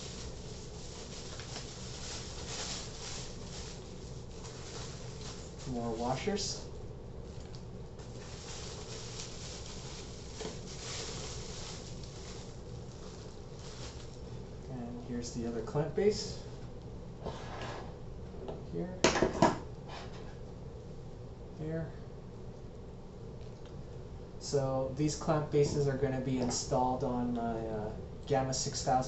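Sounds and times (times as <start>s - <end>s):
packaging rustling and crackling: 0.0s - 6.4s, 7.2s - 14.6s
low background hum and hiss: 0.0s - 29.0s.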